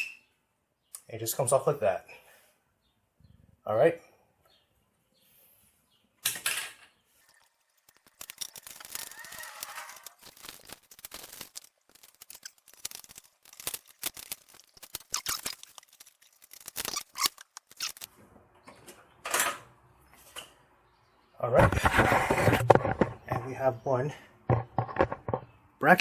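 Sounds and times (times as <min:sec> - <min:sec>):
small car parts and tools clicking: 0:06.2 - 0:18.1.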